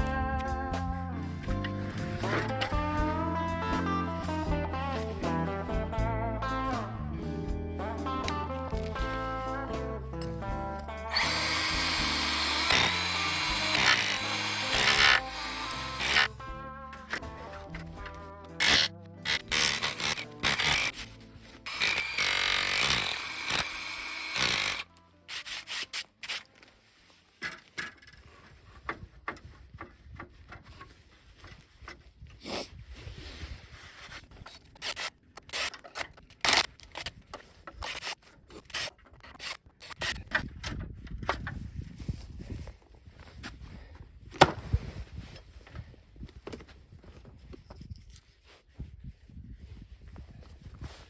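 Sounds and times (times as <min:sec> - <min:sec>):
sawing-like scraping: 0:18.6 - 0:26.5
knocks and clicks of handling parts: 0:27.4 - 0:32.0.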